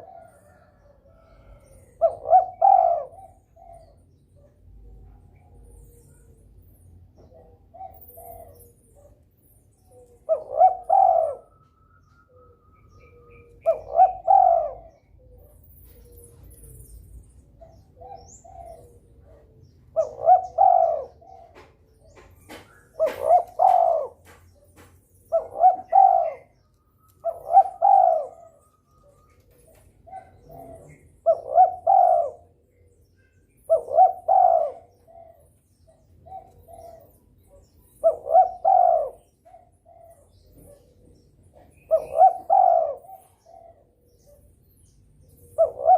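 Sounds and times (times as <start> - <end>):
dove cooing: 0.0 - 45.9.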